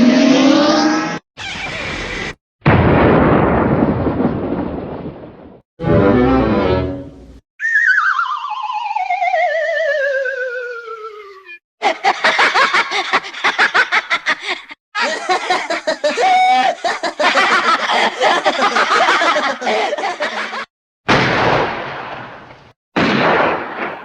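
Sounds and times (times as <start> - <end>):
sudden bang: 2.6 - 5.6
falling warbling whistle tone: 7.6 - 11.6
cartoon snickering laughter: 11.3 - 20.7.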